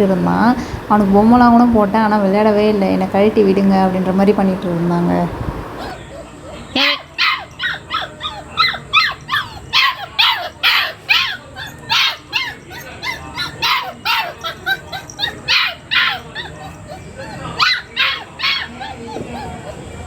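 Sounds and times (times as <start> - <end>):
puppy barking and yipping: 5.6 - 20.0.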